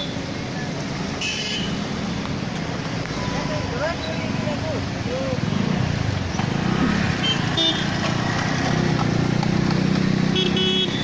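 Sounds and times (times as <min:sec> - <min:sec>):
car horn toots: 0:10.3 - 0:11.0.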